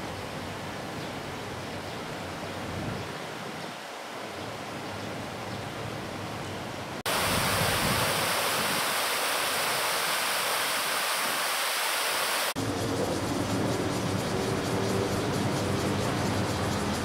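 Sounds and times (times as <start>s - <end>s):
loud steady rushing noise: 7.1s - 17.0s.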